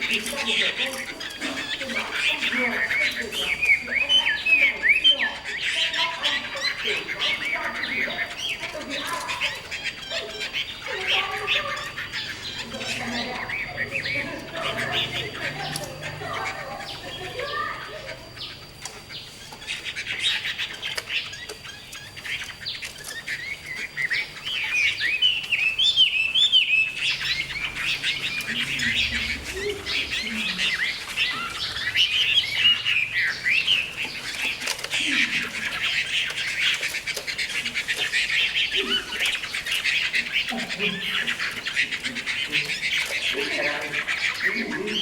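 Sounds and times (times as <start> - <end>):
songbird chirping and chattering: 0.0 - 45.0.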